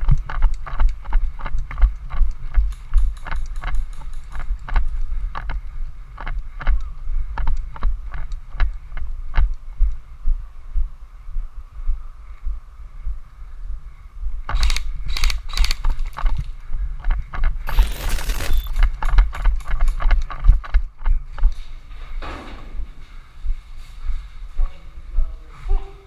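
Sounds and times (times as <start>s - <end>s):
rapid ticks: 0.0s - 10.0s, 14.5s - 21.5s
footsteps: 14.5s - 26.0s.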